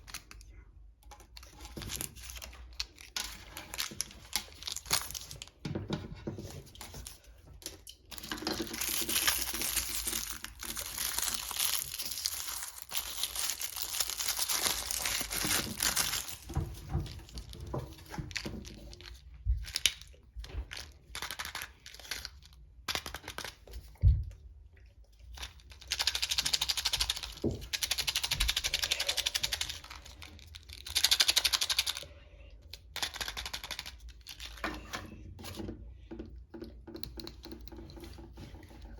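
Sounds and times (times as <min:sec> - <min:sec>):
wrapping crinkling and tearing: 0:00.0 - 0:05.6, 0:06.7 - 0:23.6.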